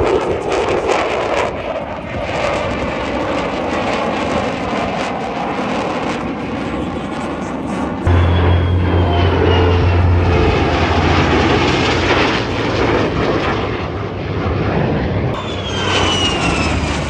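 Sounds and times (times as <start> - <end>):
high whine falling in pitch: 8.1 - 13.8
plane flying past: 8.1 - 17.0.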